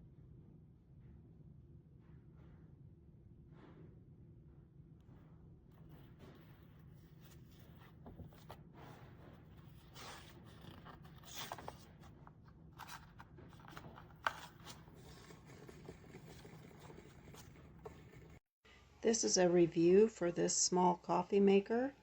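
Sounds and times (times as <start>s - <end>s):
handling rustling and scraping: 5.7s - 18.4s.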